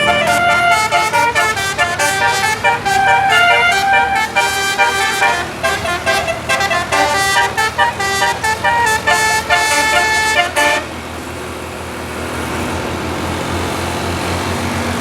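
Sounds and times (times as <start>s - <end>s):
musical air horns playing melody: 0.0s - 11.0s.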